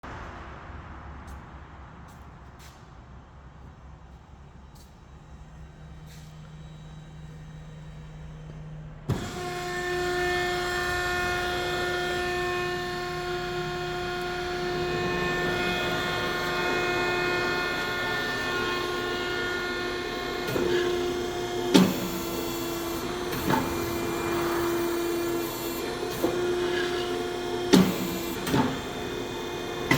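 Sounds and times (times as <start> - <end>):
electric motor humming: 5.4 - 29.9.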